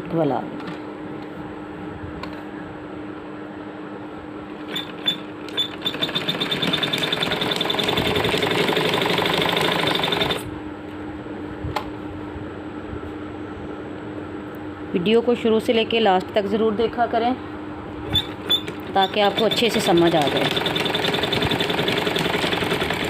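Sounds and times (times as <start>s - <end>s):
sewing machine stitching: 4.6s - 10.4s, 18.1s - 23.0s.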